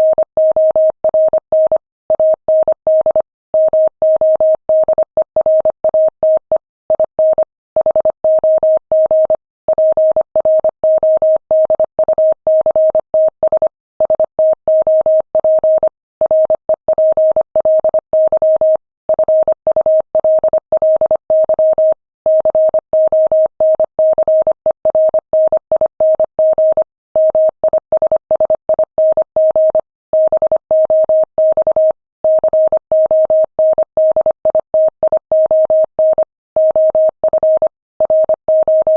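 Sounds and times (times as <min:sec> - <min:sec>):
morse code tone: 0:23.7 - 0:38.9.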